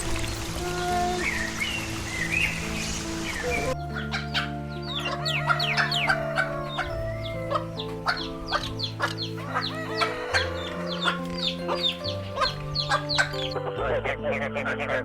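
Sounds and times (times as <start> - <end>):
background music of sustained chords: 0.0 - 15.0
chickens clucking: 3.3 - 15.0.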